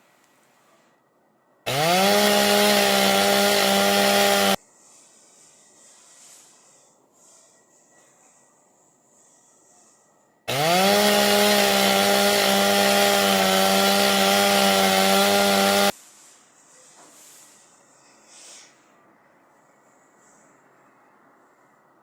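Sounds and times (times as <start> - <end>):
motor buzzing: 1.7 - 4.6, 10.5 - 15.9.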